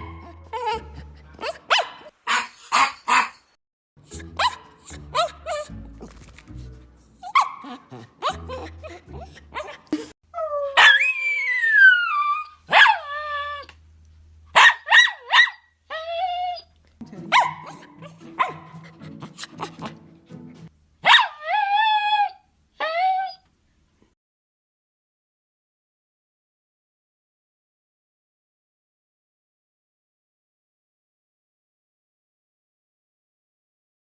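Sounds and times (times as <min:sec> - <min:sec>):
background music: 0:00.0 - 0:02.1, 0:04.0 - 0:10.1, 0:17.0 - 0:20.7
dog whining: 0:00.0 - 0:03.4, 0:04.1 - 0:06.3, 0:07.2 - 0:13.7, 0:14.9 - 0:16.7, 0:21.1 - 0:23.5
dogs barking: 0:00.0 - 0:03.4, 0:04.1 - 0:05.8, 0:07.2 - 0:09.9, 0:12.7 - 0:13.1, 0:14.6 - 0:15.6, 0:17.2 - 0:20.2, 0:21.0 - 0:21.5
dog yips: 0:00.0 - 0:03.5, 0:04.1 - 0:06.2, 0:07.2 - 0:13.7, 0:14.6 - 0:16.7, 0:17.3 - 0:19.9, 0:21.0 - 0:23.4.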